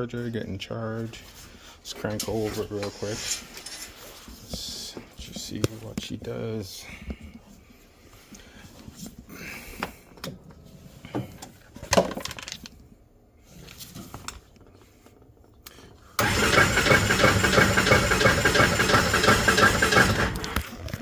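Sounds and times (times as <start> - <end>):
starter cranking engine: 16.2 - 20.7.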